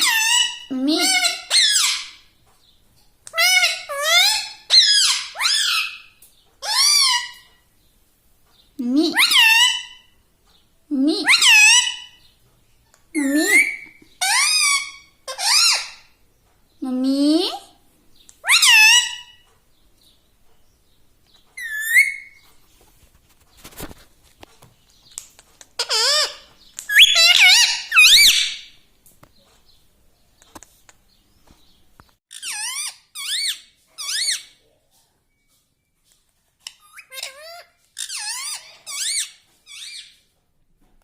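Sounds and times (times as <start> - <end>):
parakeet squeaky chirps: 0.0 - 2.2, 3.3 - 7.5, 9.0 - 10.0, 11.2 - 12.2, 13.2 - 16.1, 18.4 - 19.4, 21.6 - 22.5, 25.8 - 28.7, 32.3 - 34.6, 36.6 - 40.2.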